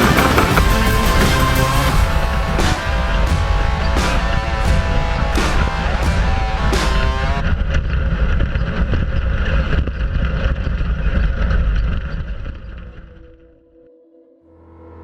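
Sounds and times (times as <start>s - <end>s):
guitar track: 0.0s - 7.5s
race vehicle engine at speed: 0.0s - 13.0s.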